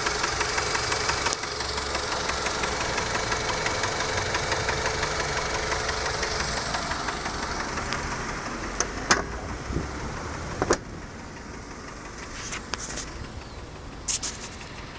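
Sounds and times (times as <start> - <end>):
engine ticking knock: 0.0 - 14.9.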